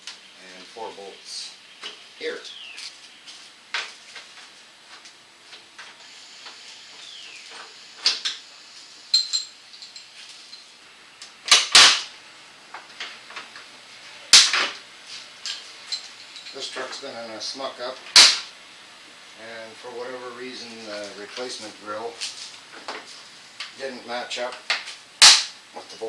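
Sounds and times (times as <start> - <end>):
loud sharp plastic snaps: 11.5 - 12.1, 14.4 - 14.8, 18.1 - 18.5, 24.7 - 25.6.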